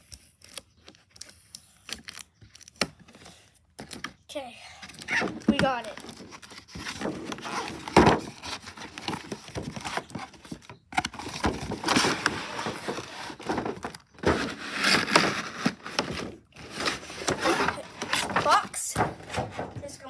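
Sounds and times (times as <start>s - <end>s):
cardboard rustling and crinkling: 4.8s - 20.0s.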